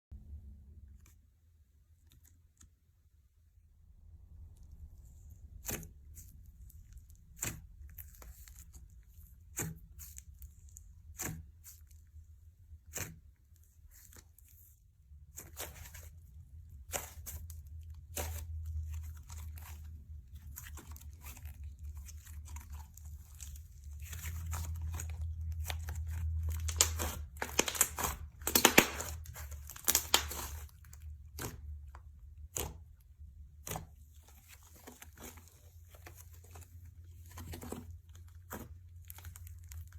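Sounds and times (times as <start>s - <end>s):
slime crackling and popping: 24.0s - 31.6s.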